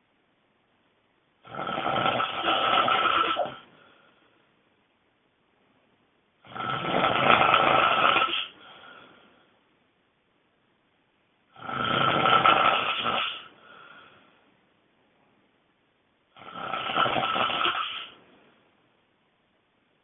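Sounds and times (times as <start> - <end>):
person snoring loudly: 1.4 - 3.7, 6.4 - 8.6, 11.5 - 13.5, 16.4 - 18.2.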